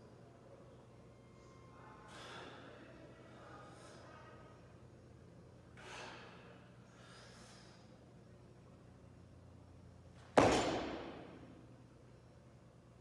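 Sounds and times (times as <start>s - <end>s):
sharp breaths: 2.1s - 2.8s, 5.8s - 8.1s
heavy thud ringing out: 10.4s - 11.4s.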